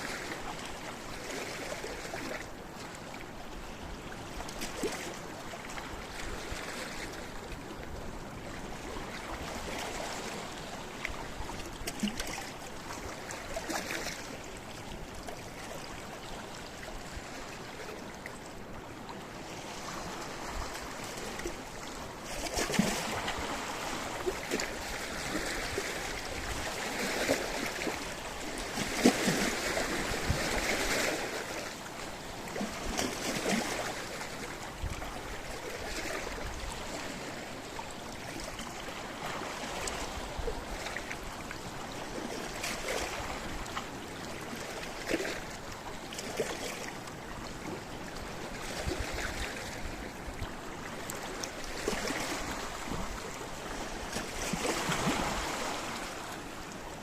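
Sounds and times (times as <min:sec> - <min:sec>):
waves splashing against rocky shore: 0:19.6 - 0:57.0.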